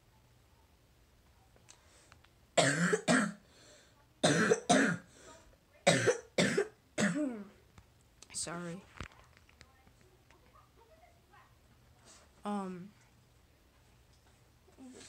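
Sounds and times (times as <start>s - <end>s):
person coughing hard: 2.6s - 3.4s, 4.2s - 5.1s, 5.8s - 7.4s.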